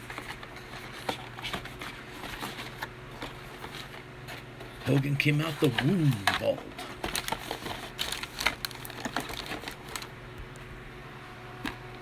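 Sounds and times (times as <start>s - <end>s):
plastic packaging crinkling: 4.9s - 10.1s.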